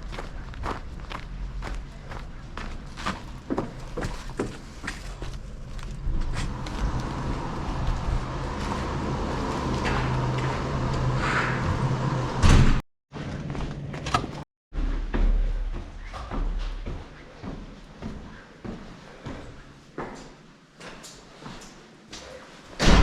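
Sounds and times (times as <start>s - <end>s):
steady low hum: 0.0s - 12.8s
door opening and shutting: 6.1s - 14.4s
loud thud: 12.4s - 12.8s.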